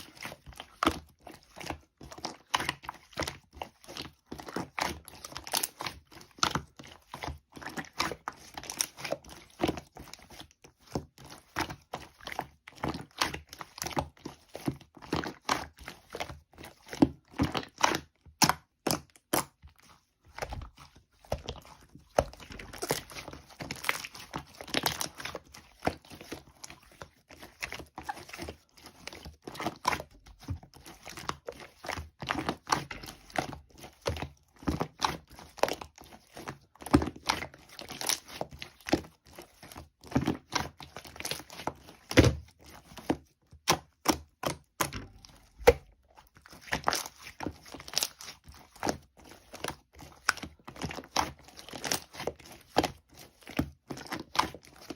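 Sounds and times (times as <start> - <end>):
crinkling and crackling handling noise: 19.6 - 54.9.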